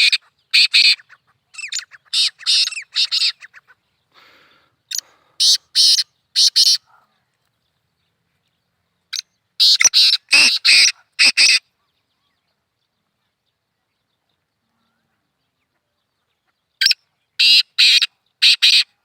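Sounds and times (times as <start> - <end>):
bird calling harsh notes: 0.0 - 6.9, 9.1 - 11.7, 16.8 - 19.0.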